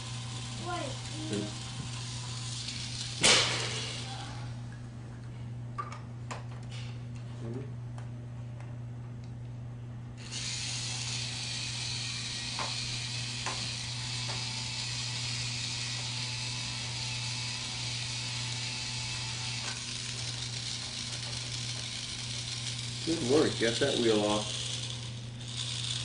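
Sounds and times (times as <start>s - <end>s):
battery drill whirring: 10.2s - 26.0s.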